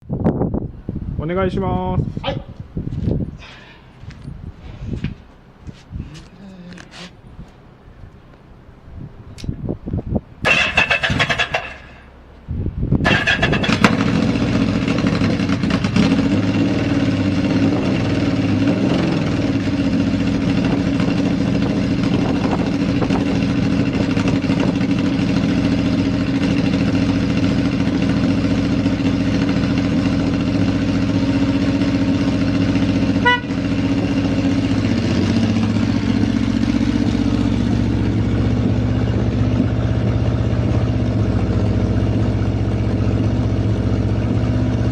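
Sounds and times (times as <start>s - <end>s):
motorcycle engine starting and idling: 10.4s - 12.3s, 13.0s - 44.9s.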